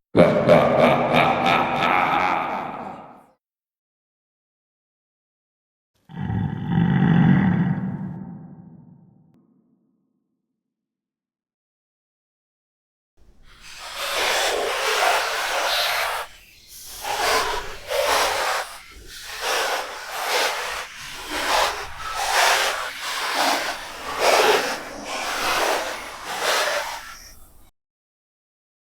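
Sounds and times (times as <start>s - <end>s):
harsh breathy creature hissing: 13.3s - 27.7s.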